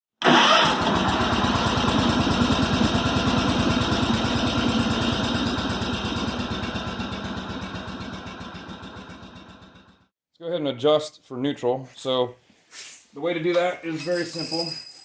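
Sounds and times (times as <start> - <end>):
garden tractor engine idling: 0.2 - 10.0.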